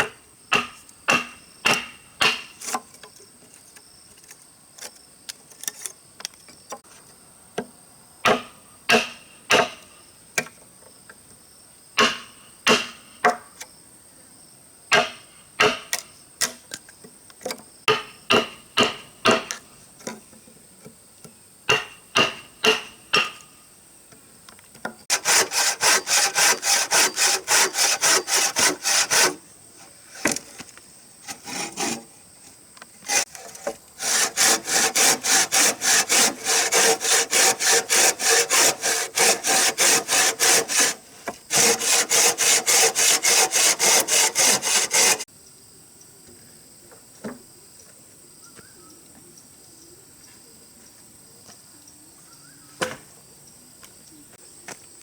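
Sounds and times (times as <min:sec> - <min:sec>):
hand saw cutting wood: 0:00.0 - 0:03.0, 0:12.0 - 0:13.0, 0:21.7 - 0:23.5, 0:25.1 - 0:32.2, 0:33.0 - 0:45.3.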